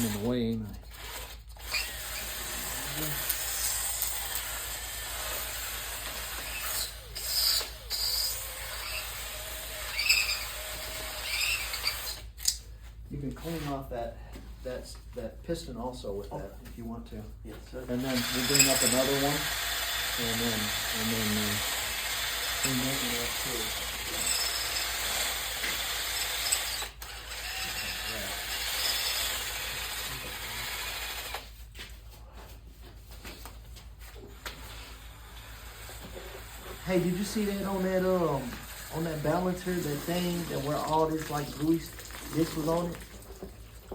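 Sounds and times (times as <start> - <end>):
wire wheel scratching metal: 9.9 - 10.6, 11.2 - 12.2, 18.0 - 21.6, 22.5 - 31.3.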